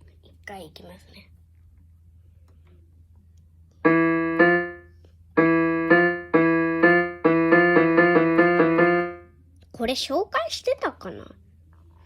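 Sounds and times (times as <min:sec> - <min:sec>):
piano melody: 0:03.8 - 0:09.3.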